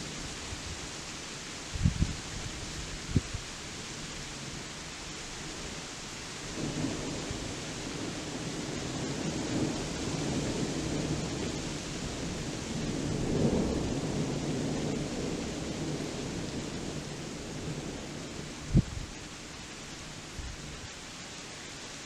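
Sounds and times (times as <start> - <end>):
rain hissing: 0.0 - 22.0
thunder rumbling: 12.1 - 19.2.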